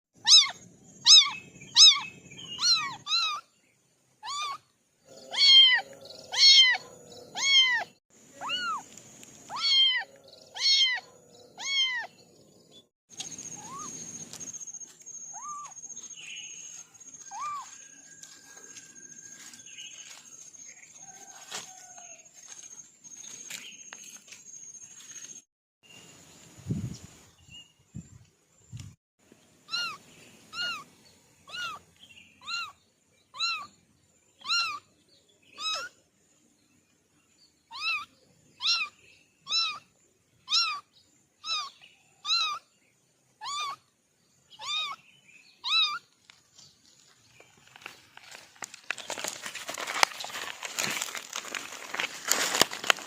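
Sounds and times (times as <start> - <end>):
kittens meowing: 0.2 - 3.5, 4.2 - 8.8, 9.5 - 12.2, 13.6 - 13.9, 15.3 - 15.7, 17.3 - 17.7, 29.7 - 30.9, 31.5 - 31.8, 32.4 - 32.8, 33.4 - 33.7, 34.4 - 34.9, 35.6 - 36.0, 37.7 - 39.9, 40.5 - 42.7, 43.4 - 43.8, 44.6 - 45.0, 45.6 - 46.1.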